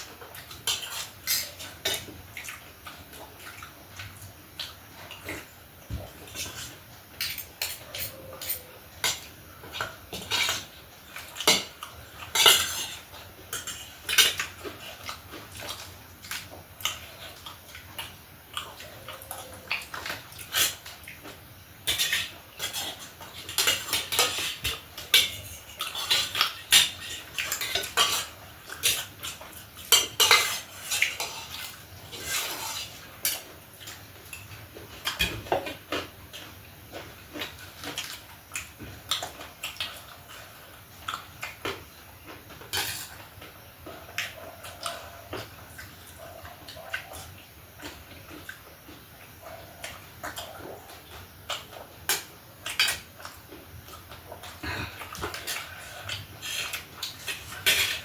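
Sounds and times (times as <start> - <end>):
spoon scraping a dish: 55.2 - 58.0.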